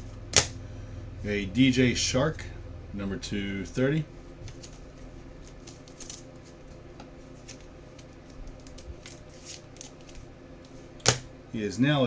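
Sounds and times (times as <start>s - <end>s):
steady low hum: 0.0s - 12.0s
trading cards clicking and rustling: 4.4s - 11.3s.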